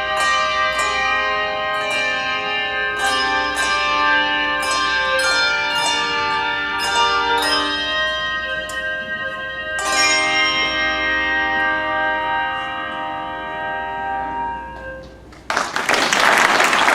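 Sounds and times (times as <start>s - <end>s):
handbell chord ringing: 0.0s - 13.3s
applause: 15.3s - 16.9s.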